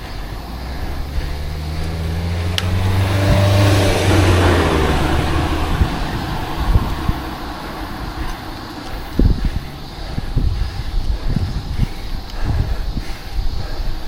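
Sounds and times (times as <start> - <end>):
car driving past: 0.0 - 11.6.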